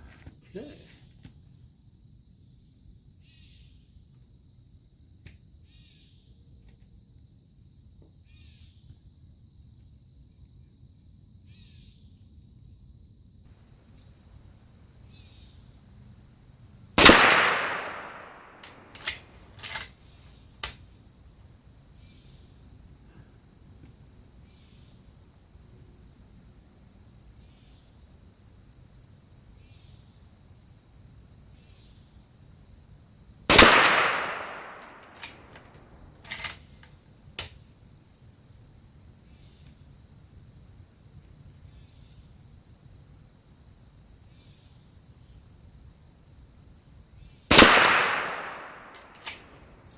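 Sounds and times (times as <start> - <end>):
rifle shots echoing: 17.0 - 19.8, 33.5 - 35.8, 47.5 - 49.6
rifle lever metallic clicks: 17.0 - 19.9, 33.6 - 36.6, 47.5 - 49.5.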